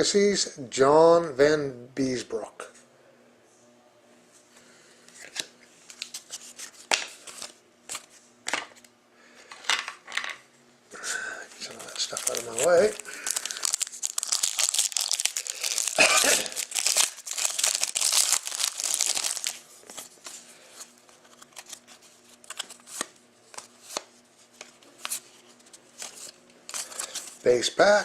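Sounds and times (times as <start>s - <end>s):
card pack wrapper tearing and crinkling: 11.5s - 25.3s, 26.0s - 27.5s.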